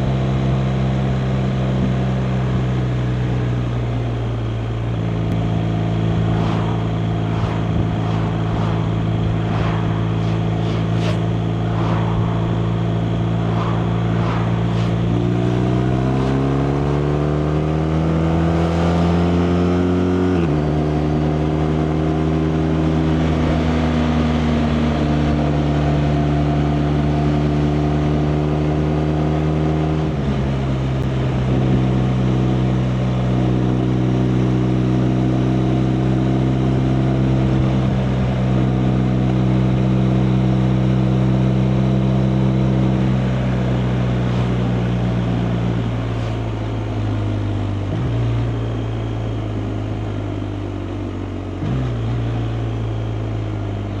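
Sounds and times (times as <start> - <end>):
motorcycle engine running: 0.0 - 18.1
road noise: 0.0 - 54.0
wind noise: 4.9 - 17.6.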